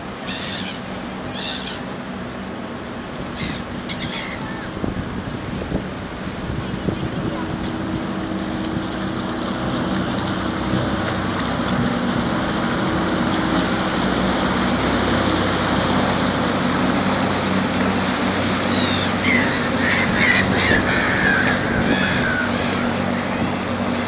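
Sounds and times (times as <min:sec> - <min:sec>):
boat engine running: 0:00.0 - 0:24.0
water: 0:00.0 - 0:24.0
gull calling loudly: 0:00.2 - 0:01.9, 0:03.4 - 0:04.7, 0:18.7 - 0:23.5
wind noise: 0:04.4 - 0:08.0, 0:20.0 - 0:23.9.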